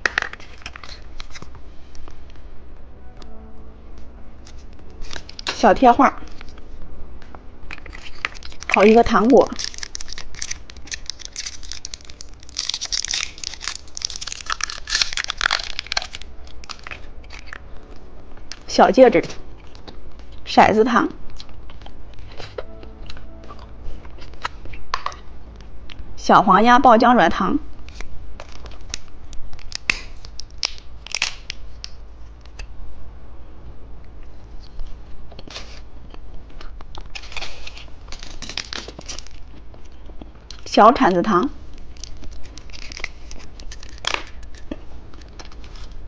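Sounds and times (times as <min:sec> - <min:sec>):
plastic wrappers crinkling: 0:00.0 - 0:02.2, 0:04.4 - 0:05.6, 0:07.6 - 0:20.4, 0:27.8 - 0:32.6, 0:36.6 - 0:40.7, 0:41.7 - 0:46.0.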